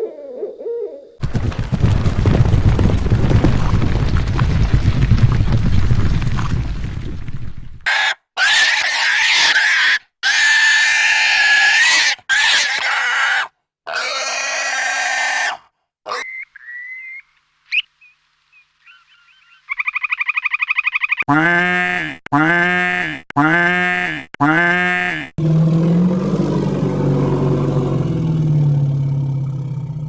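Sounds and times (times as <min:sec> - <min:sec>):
harsh animal squealing cries: 0:07.9 - 0:17.8, 0:18.9 - 0:21.2
fast trilling call: 0:16.1 - 0:21.2
animal chirps: 0:16.1 - 0:21.3.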